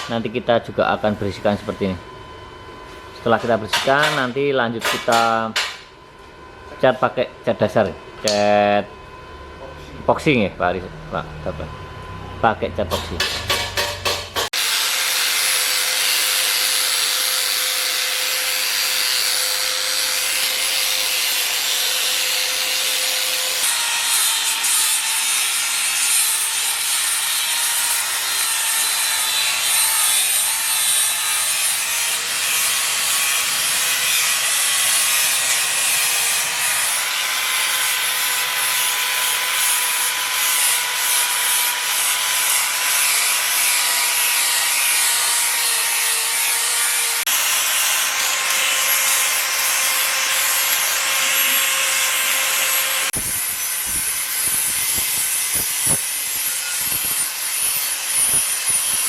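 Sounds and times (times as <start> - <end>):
electric grinder on metal: 10.4 - 59.0.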